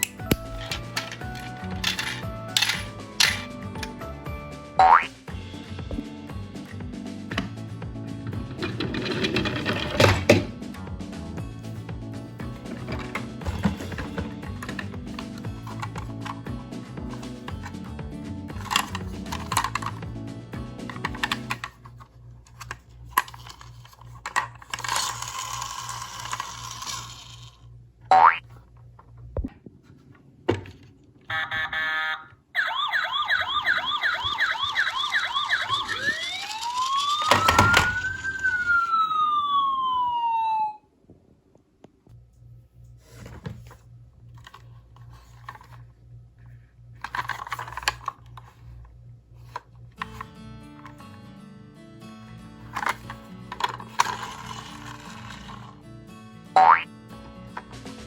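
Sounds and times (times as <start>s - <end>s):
toy cars clicking and clattering: 0.0s - 3.9s, 8.5s - 10.5s, 12.6s - 16.5s, 18.5s - 20.1s, 20.8s - 27.7s, 33.6s - 39.0s, 44.4s - 45.8s, 47.0s - 48.8s, 49.4s - 50.3s, 52.7s - 55.8s
toy car rolling hiss: 23.2s - 27.7s, 35.5s - 38.6s, 52.8s - 55.8s.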